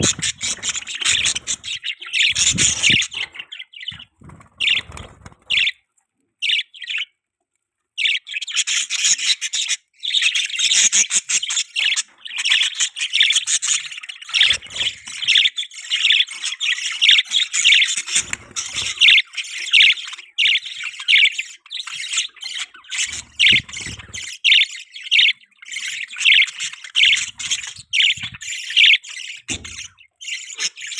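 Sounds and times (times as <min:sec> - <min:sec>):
budgies chirping and squawking: 0:00.0 - 0:07.3, 0:08.0 - 0:30.9.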